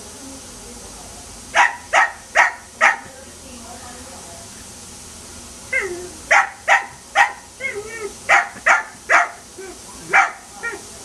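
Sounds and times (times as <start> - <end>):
dog barking: 1.6 - 3.1, 5.8 - 9.4, 10.0 - 10.8
dog yipping and whining: 5.7 - 10.8.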